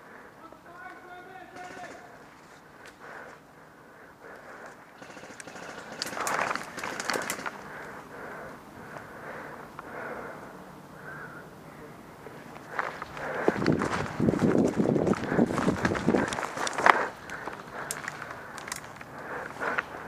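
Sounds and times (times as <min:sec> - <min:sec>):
gear rustling: 0:04.5 - 0:08.0, 0:12.4 - 0:20.0
faint distant voices: 0:05.0 - 0:13.5
footsteps: 0:12.4 - 0:20.0
crunching: 0:12.6 - 0:20.0.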